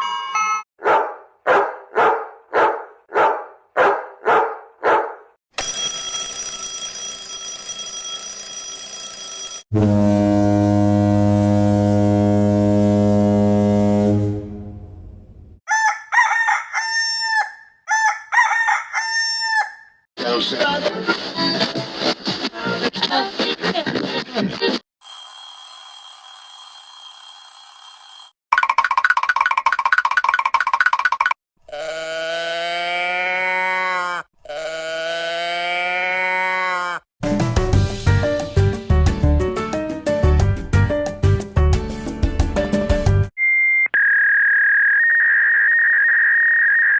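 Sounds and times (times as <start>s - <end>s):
bell-like alarm ringing: 5.6s - 9.6s, 25.0s - 28.4s
low steady horn-like alarm tone: 9.8s - 15.0s
rooster crowing: 15.7s - 20.0s
long bleat-like calls: 31.7s - 37.1s.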